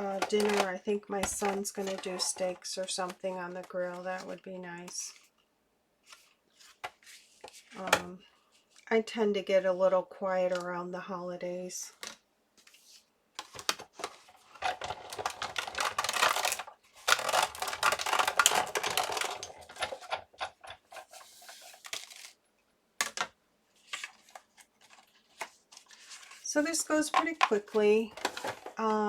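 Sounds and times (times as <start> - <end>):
plastic plates clicking and clattering: 0.0 - 3.2, 13.4 - 22.3, 23.0 - 25.5, 27.1 - 28.9.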